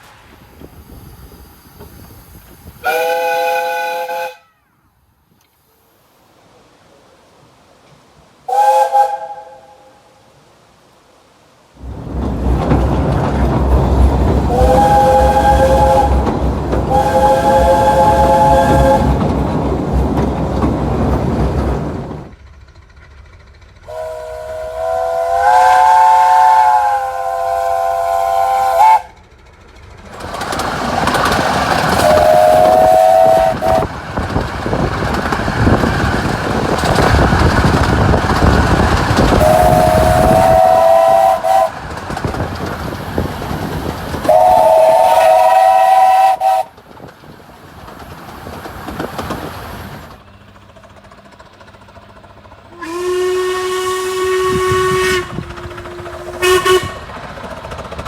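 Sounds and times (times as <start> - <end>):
steam train rumbling: 0.0 - 58.0
steam locomotive whistle: 2.8 - 4.8, 8.4 - 10.2, 14.4 - 19.3, 23.8 - 29.3, 31.8 - 33.9, 39.2 - 42.0, 44.2 - 46.8, 52.7 - 57.2.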